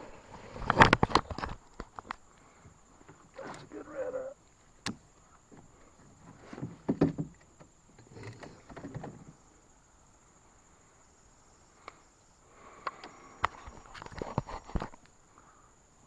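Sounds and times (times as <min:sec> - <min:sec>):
insects buzzing: 0:00.0 - 0:16.0
knocks and rustles: 0:00.3 - 0:02.2, 0:05.5 - 0:09.4.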